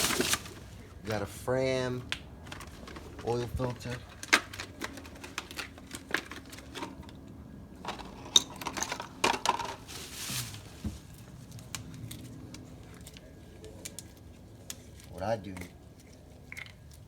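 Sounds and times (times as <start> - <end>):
packaging rustle: 0.0 - 0.9, 9.7 - 12.3.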